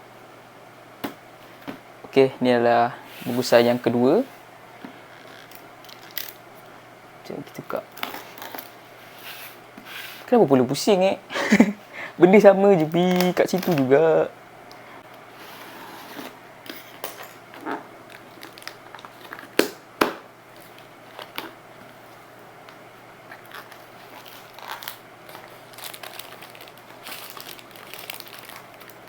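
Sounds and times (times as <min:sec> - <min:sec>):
packaging crinkling and tearing: 0:18.1 - 0:19.6, 0:23.3 - 0:29.0.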